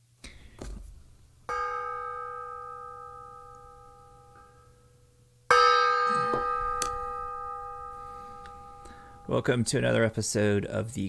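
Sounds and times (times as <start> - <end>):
bell ringing: 5.5 - 10.2.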